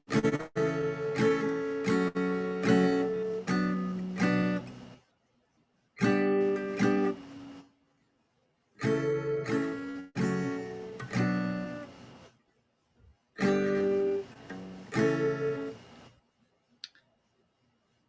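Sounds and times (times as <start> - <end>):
acoustic guitar strumming chords: 0.1 - 5.0, 6.0 - 7.6, 8.8 - 12.1, 13.4 - 15.8.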